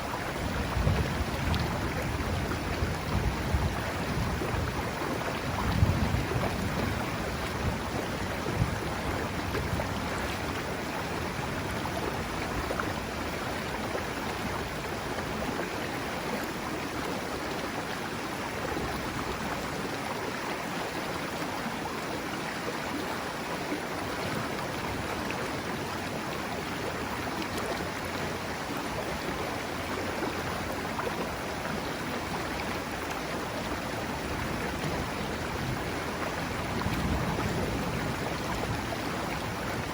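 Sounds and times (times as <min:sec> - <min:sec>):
river water rushing: 0:00.0 - 0:39.9
wind buffeting microphone: 0:00.3 - 0:15.6, 0:33.6 - 0:39.9.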